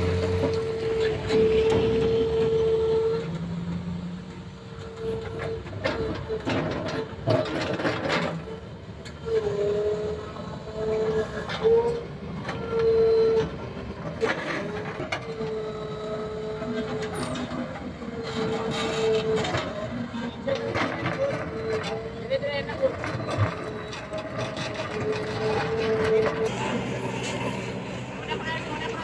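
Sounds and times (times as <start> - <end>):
diesel engine under load: 0.0 - 29.0
machine whine: 26.4 - 29.0.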